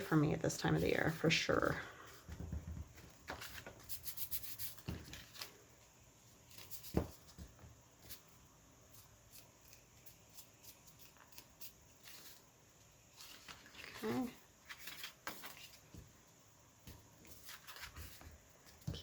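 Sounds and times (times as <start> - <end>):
paper pages rustling: 2.9 - 8.3, 8.9 - 16.1, 17.2 - 18.8.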